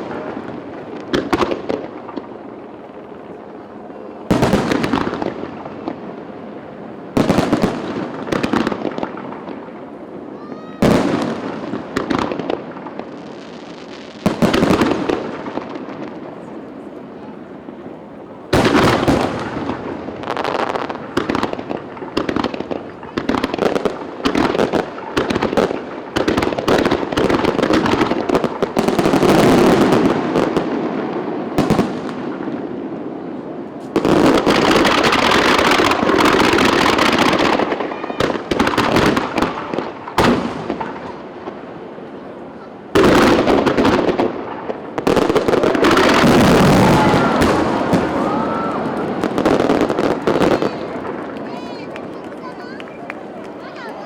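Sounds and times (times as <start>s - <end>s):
fireworks crackling: 0.0s - 54.0s
firework shells bursting: 43.0s - 54.0s.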